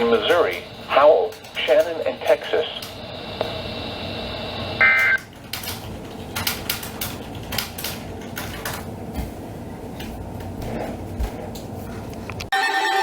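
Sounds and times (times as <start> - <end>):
radio static crackling: 0.0 - 5.2.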